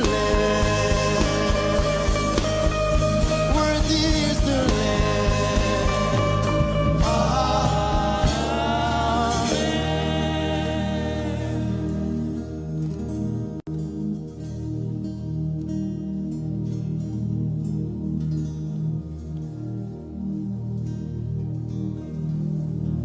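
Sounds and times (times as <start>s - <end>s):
steady drum beat: 0.0s - 11.2s
person singing long notes: 0.0s - 12.2s
instrumental backing: 0.0s - 21.5s.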